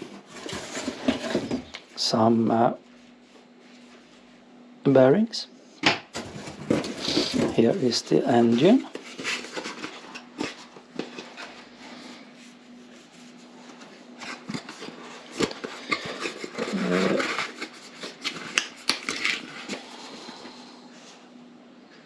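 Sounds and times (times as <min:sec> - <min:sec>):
parts and packaging rustling: 0:00.0 - 0:01.8, 0:06.1 - 0:21.2
steady low hum: 0:00.0 - 0:22.0.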